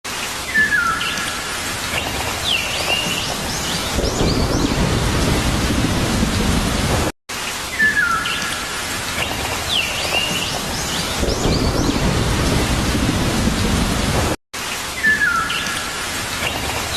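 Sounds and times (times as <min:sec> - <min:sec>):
steady rain: 0:00.1 - 0:16.9
low rumble of thunder: 0:03.4 - 0:07.1, 0:10.6 - 0:14.4
birds chirping: 0:15.0 - 0:15.9.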